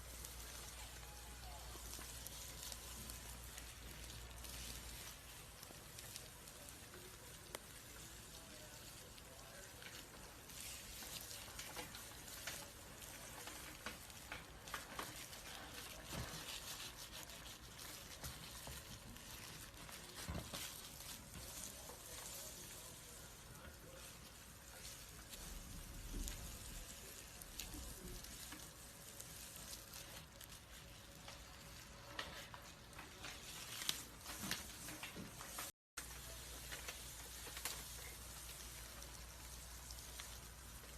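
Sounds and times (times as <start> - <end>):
snake skin crackling and rustling: 0.0 - 40.9.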